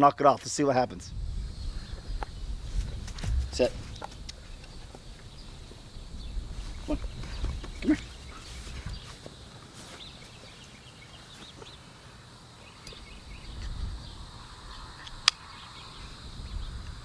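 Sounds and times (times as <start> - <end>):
low rumble of movement: 0.8 - 9.4.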